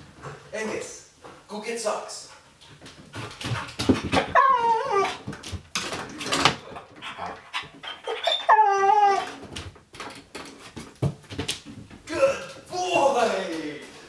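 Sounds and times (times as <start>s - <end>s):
dog whining: 4.2s - 5.3s, 7.0s - 9.5s.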